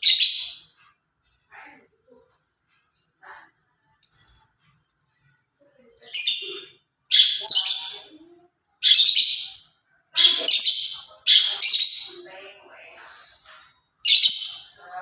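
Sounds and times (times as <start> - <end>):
lovebird chirping: 0.0 - 0.8, 4.0 - 4.7, 6.0 - 13.4, 14.0 - 15.0.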